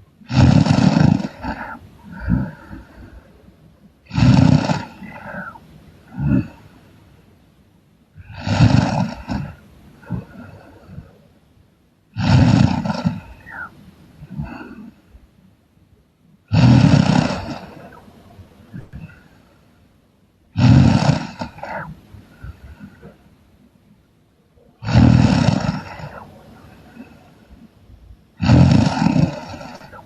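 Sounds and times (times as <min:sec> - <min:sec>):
person snoring loudly: 0:00.2 - 0:03.3, 0:04.1 - 0:06.7, 0:08.2 - 0:11.1, 0:12.2 - 0:15.0, 0:16.5 - 0:18.1, 0:20.6 - 0:23.1, 0:24.8 - 0:27.3, 0:28.4 - 0:30.0.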